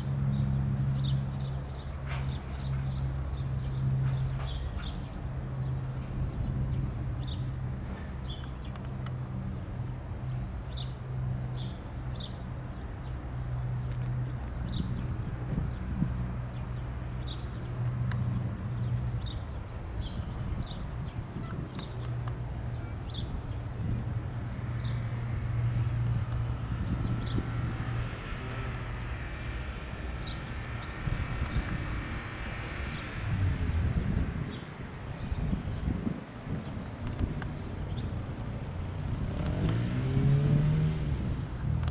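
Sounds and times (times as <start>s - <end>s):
turboprop engines droning: 0.0s - 41.9s
small birds chirping: 11.6s - 41.0s
faint high whine: 22.5s - 39.0s.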